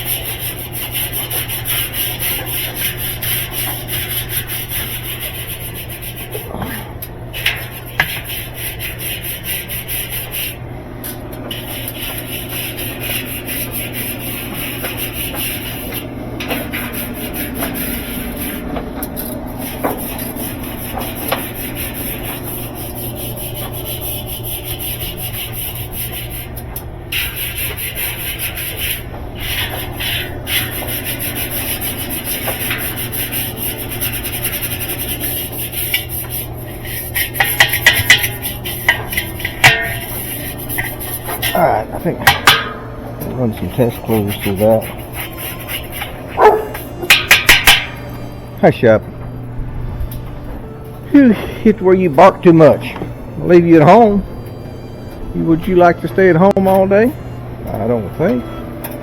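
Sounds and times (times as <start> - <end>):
rubbing and scraping: 0.0 - 48.0
low steady hum: 0.0 - 59.0
sharp metallic clanks: 46.4 - 48.1.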